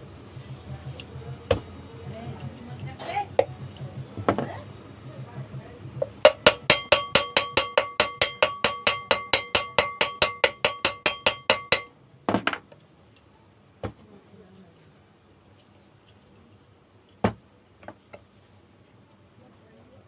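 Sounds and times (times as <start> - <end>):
rapid ringing metal taps: 6.0 - 11.9.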